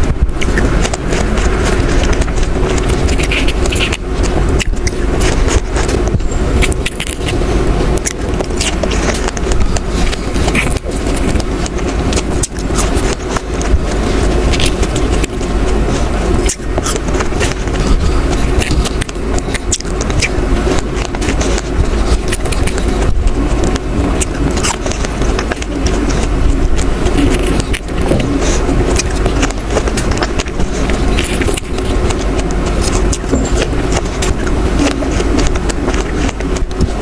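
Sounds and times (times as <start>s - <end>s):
chewing strawberries: 0.0s - 37.0s
steady low rumble: 0.0s - 37.0s
wet mouth clicks: 0.2s - 37.0s.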